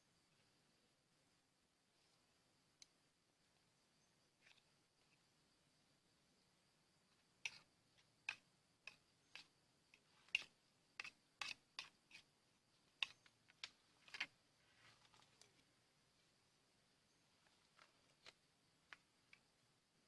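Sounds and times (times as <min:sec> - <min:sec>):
faint sharp clicks: 0:02.8 - 0:03.0.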